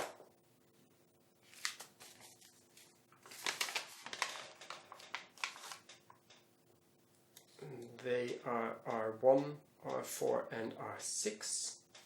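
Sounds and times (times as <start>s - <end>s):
packaging rustling and crinkling: 1.5s - 6.0s.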